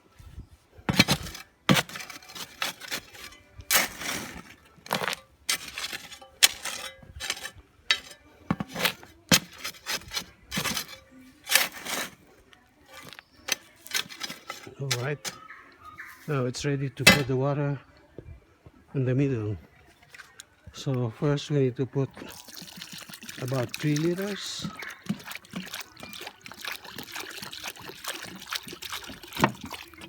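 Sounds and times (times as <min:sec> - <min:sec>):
stones clinking against container: 0:00.9 - 0:12.2, 0:12.9 - 0:15.4, 0:22.1 - 0:30.0
tool scraping dry gravel mix: 0:00.9 - 0:15.4, 0:22.2 - 0:27.1.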